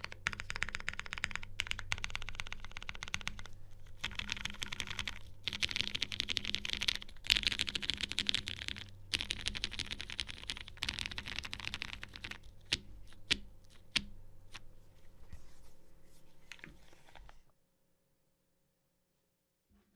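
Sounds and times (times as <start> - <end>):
mechanical keyboard typing: 0.0 - 14.0.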